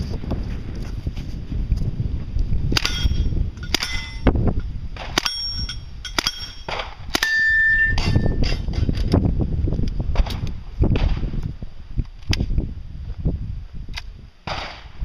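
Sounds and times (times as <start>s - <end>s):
metallic ringing: 2.8s - 8.9s
bullets clanging on steel targets: 2.8s - 9.1s.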